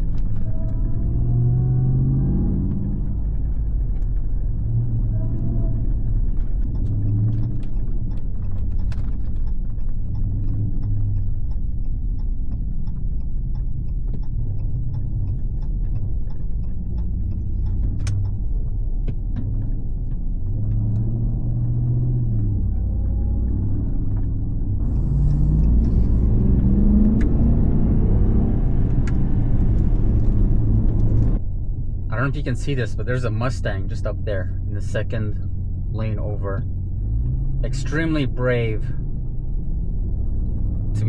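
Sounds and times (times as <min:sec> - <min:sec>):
light ticks and clicks: 0:00.0 - 0:26.0
car exhaust rumble: 0:00.0 - 0:41.0.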